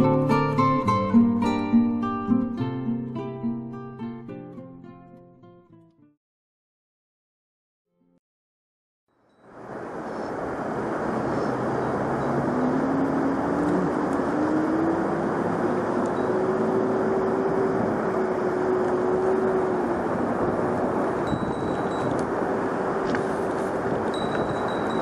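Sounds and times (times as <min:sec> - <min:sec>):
faint rising drone: 0:09.4 - 0:24.9
stream water rushing: 0:09.4 - 0:25.0.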